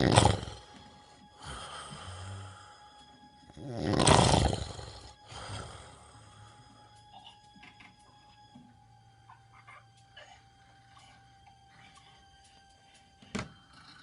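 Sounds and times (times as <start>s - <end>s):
person snoring: 0.0s - 2.9s, 3.5s - 6.6s
soft breath: 0.8s - 3.2s.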